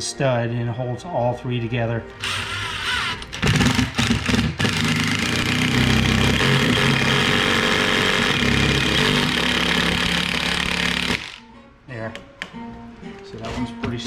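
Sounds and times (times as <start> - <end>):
power drill driving a screw: 2.2 - 11.4.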